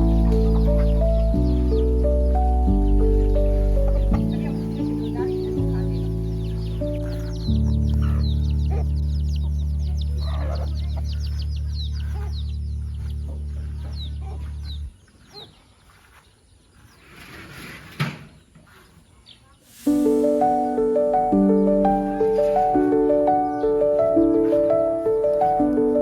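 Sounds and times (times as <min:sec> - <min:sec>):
low background music chords: 0:00.0 - 0:14.6, 0:19.9 - 0:26.0
chickens peeping and clucking: 0:00.0 - 0:17.0, 0:18.4 - 0:26.0.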